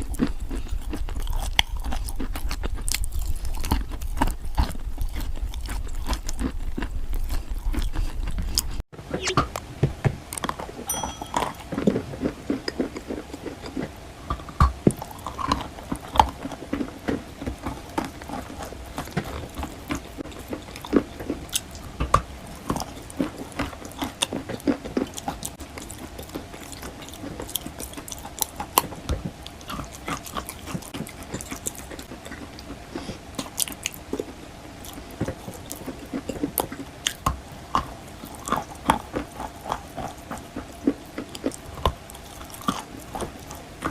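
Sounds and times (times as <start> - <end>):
chalk being chewed crunching: 0.0 - 8.8, 22.5 - 43.9.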